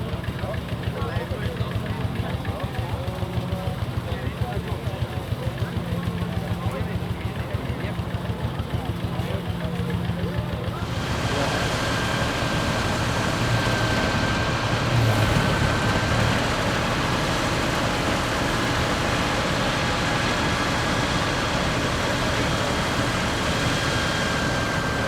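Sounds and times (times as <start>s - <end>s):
diesel tractor running: 7.0s - 25.0s
combine threshing: 10.8s - 25.0s
thin steady whine: 10.8s - 25.0s.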